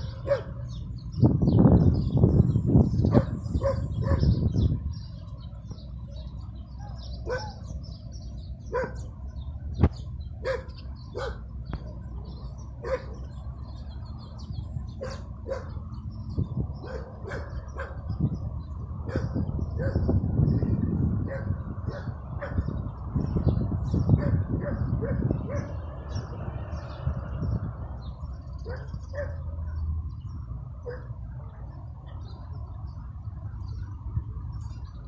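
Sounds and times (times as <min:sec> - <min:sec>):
dog barking: 0:00.0 - 0:00.6, 0:03.1 - 0:04.4, 0:07.2 - 0:07.6, 0:08.7 - 0:09.1, 0:10.4 - 0:11.4, 0:12.8 - 0:13.2, 0:15.0 - 0:15.8, 0:16.8 - 0:18.0, 0:19.1 - 0:20.1, 0:24.2 - 0:25.8, 0:28.7 - 0:29.4, 0:30.8 - 0:31.1.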